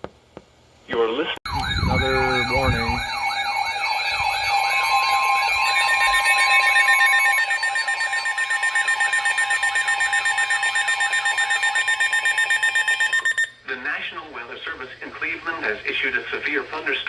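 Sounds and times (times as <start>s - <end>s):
steady alert tone: 1.5s - 13.5s
warbling siren tone: 1.5s - 13.5s
rapid even beeping: 1.5s - 13.6s.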